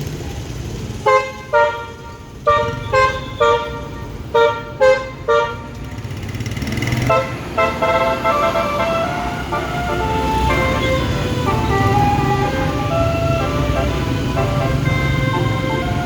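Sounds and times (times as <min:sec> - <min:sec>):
multi-tone air horn melody: 0:01.0 - 0:06.2, 0:06.8 - 0:16.0
low engine rumble: 0:07.1 - 0:16.0.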